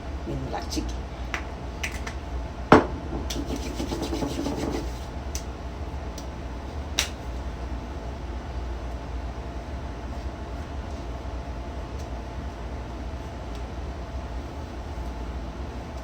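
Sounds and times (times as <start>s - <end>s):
steady low hum: 0.0s - 16.0s
hands rubbing skin: 3.3s - 5.1s.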